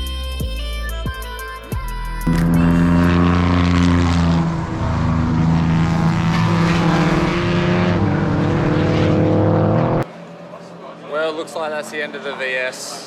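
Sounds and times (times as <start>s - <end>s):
race car engine at high revs: 2.3s - 10.1s.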